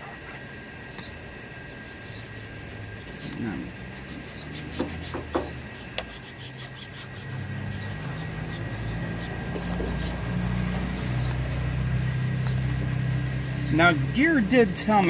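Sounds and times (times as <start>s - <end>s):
plastic tool scraping decal: 3.9s - 11.4s
low engine hum: 7.1s - 15.0s.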